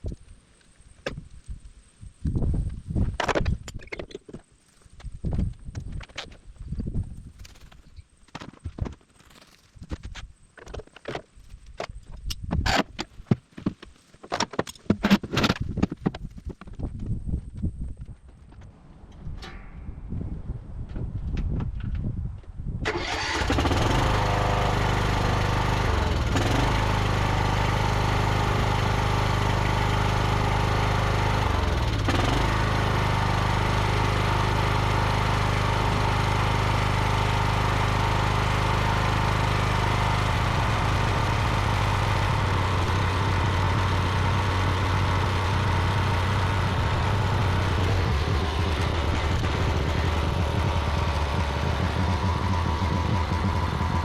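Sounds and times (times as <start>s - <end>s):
ride-on mower engine running: 22.9s - 54.0s.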